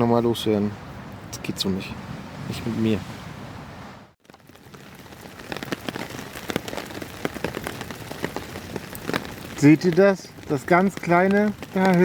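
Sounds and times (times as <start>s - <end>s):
rain pattering: 4.2s - 12.0s.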